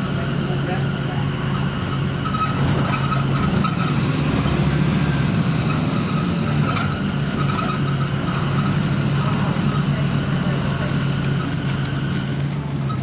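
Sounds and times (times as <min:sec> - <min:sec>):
bus engine drone: 0:00.0 - 0:13.0.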